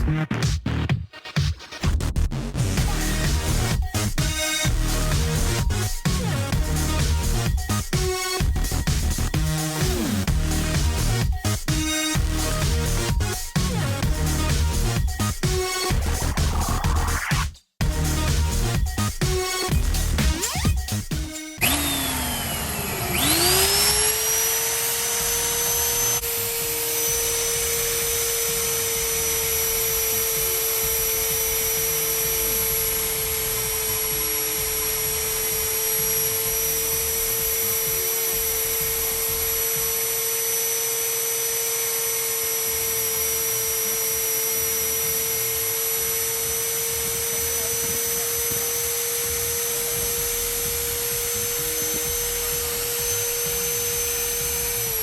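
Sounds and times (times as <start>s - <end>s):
drilling machine motor whining: 21.5s - 55.0s.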